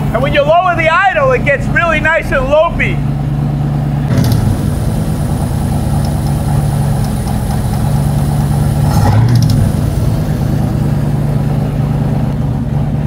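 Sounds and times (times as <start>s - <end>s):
engine idling unevenly: 0.0s - 13.0s
engine lifter ticking: 4.0s - 13.0s.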